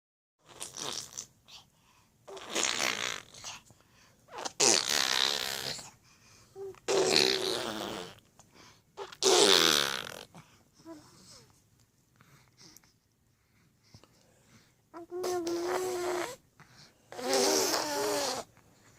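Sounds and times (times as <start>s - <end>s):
faint breathing: 3.6s - 4.3s, 5.9s - 6.6s, 8.4s - 9.0s, 10.3s - 14.9s, 16.6s - 17.2s.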